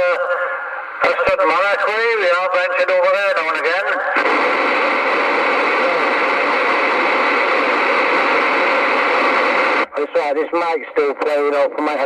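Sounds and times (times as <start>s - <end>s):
radio receiver static hiss: 0.0s - 12.0s.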